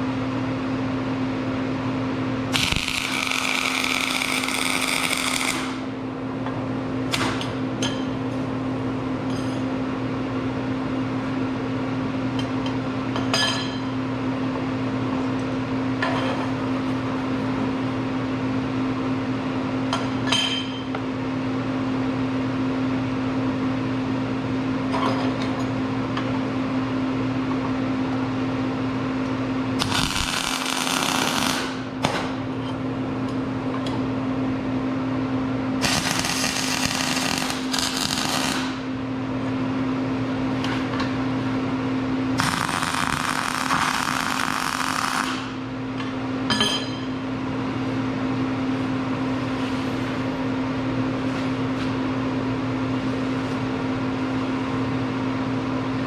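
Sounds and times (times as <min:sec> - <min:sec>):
crackling welding arc: 0:02.5 - 0:05.9, 0:29.8 - 0:32.0, 0:35.8 - 0:38.9, 0:42.4 - 0:45.6
electrical hum: 0:26.4 - 0:46.5.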